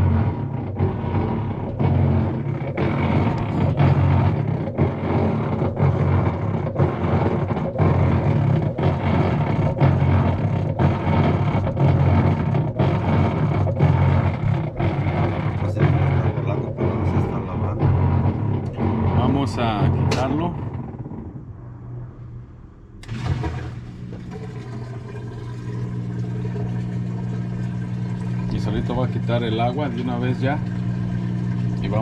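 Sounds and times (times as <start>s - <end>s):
washing machine humming: 0.0s - 32.0s.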